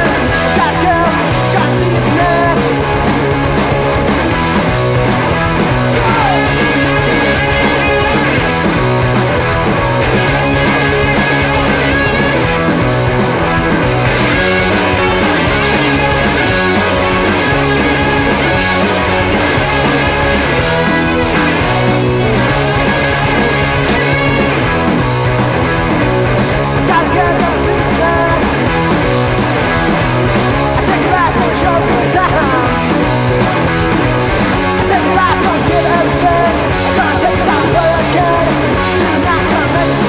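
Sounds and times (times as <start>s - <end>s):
rock band electric guitar: 0.0s - 40.0s.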